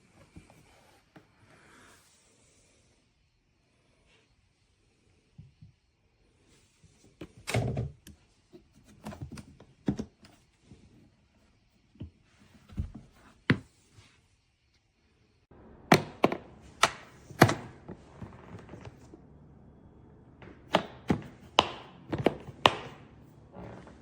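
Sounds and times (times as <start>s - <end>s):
plastic case knocks and thunks: 15.9s - 19.1s, 20.4s - 23.0s.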